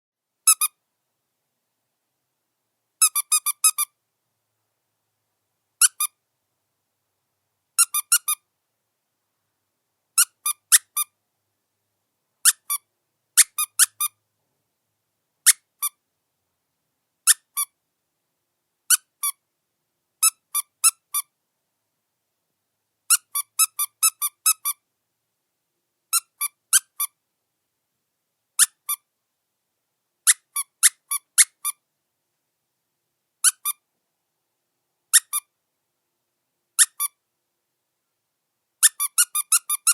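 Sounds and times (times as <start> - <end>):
squeaky dog toy squeaks: 0.5 - 0.8, 3.0 - 3.9, 5.8 - 6.2, 7.8 - 8.4, 10.2 - 11.1, 12.4 - 14.2, 15.5 - 16.0, 17.2 - 17.7, 18.9 - 19.4, 20.2 - 21.3, 23.1 - 24.8, 26.1 - 27.2, 28.6 - 29.0, 30.2 - 31.8, 33.4 - 33.8, 35.1 - 35.5, 36.8 - 37.2, 38.8 - 39.9.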